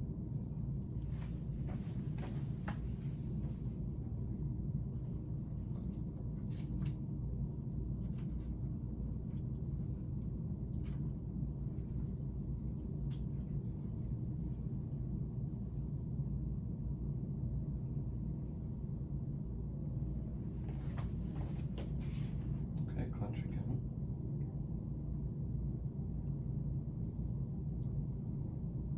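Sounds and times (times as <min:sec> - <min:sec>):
low background rumble: 0:00.0 - 0:28.9.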